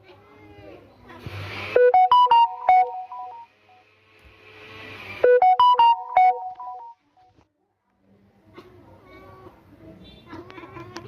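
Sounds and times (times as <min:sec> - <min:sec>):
staccato keyboard notes: 0:01.8 - 0:03.4, 0:05.3 - 0:06.9.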